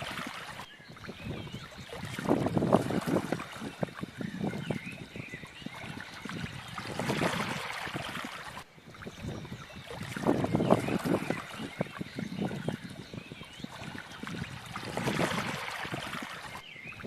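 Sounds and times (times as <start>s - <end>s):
stream water trickling and splashing: 0.0s - 17.0s.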